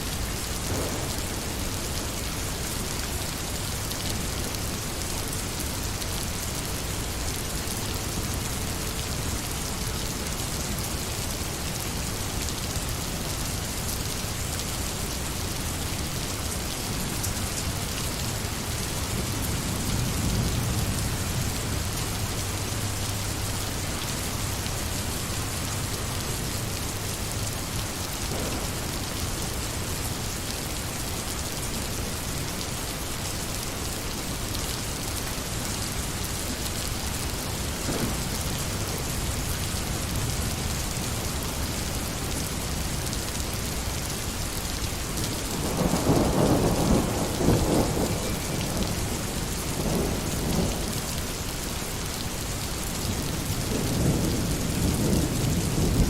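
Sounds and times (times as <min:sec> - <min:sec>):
heavy rain falling: 0:00.0 - 0:56.0
thunder rumbling: 0:00.2 - 0:03.8, 0:28.2 - 0:30.3, 0:37.5 - 0:41.3, 0:45.6 - 0:50.8.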